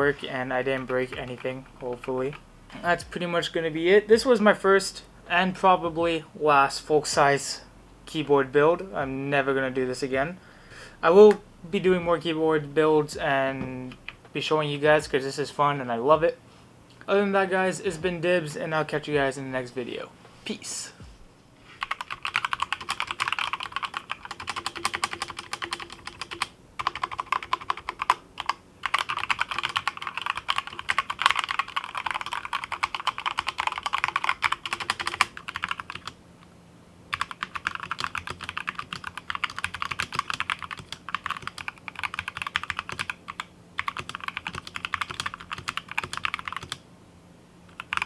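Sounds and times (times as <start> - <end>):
fast typing on mechanical keyboard: 21.8 - 36.2, 37.1 - 46.8, 47.7 - 48.0.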